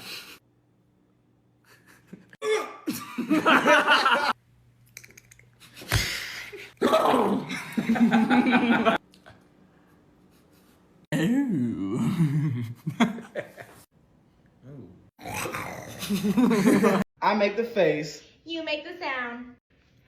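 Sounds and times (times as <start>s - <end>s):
laughter-like sounds: 1.6s - 4.4s, 7.5s - 9.0s, 16.0s - 17.0s
non-word vocal noises: 11.1s - 12.8s, 14.6s - 16.1s.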